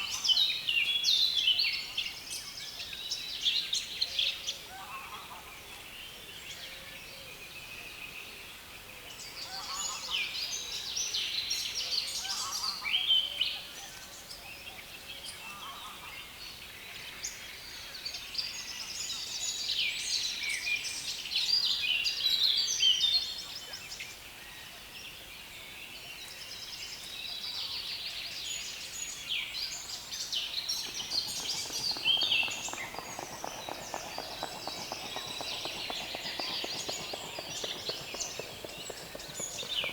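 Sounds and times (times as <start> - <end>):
songbirds chattering: 30.6 - 39.9.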